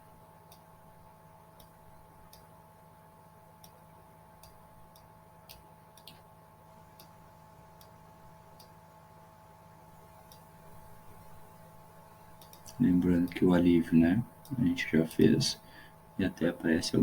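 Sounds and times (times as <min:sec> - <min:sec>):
low electrical hum: 0:00.0 - 0:17.0
computer mouse clicks: 0:01.6 - 0:02.5, 0:03.6 - 0:06.3, 0:06.9 - 0:07.2, 0:07.8 - 0:08.8, 0:10.2 - 0:10.5, 0:12.4 - 0:13.4.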